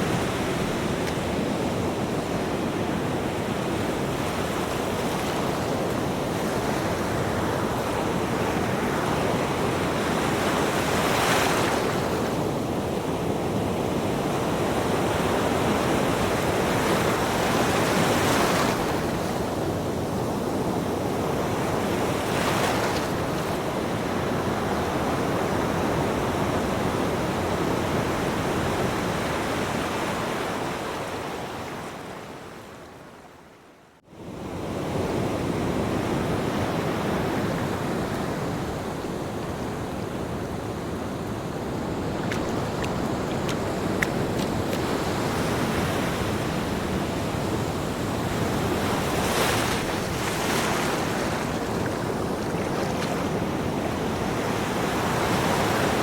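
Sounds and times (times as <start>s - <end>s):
ocean waves breaking: 35.4s - 56.0s.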